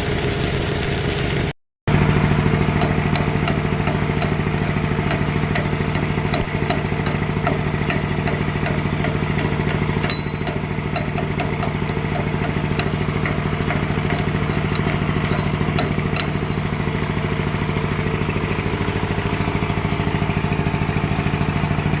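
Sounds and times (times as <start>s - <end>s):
engine running steadily: 1.9s - 22.0s.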